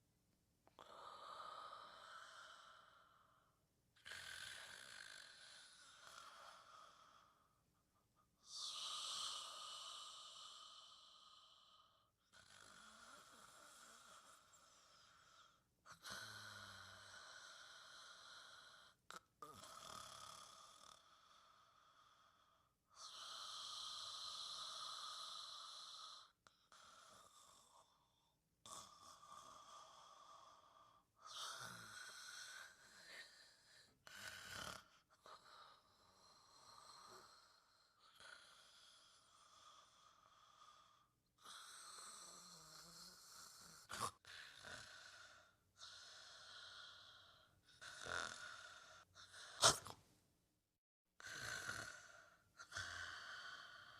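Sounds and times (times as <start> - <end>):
person snoring: 8.4 - 21.5, 23.0 - 50.0, 51.2 - 53.9.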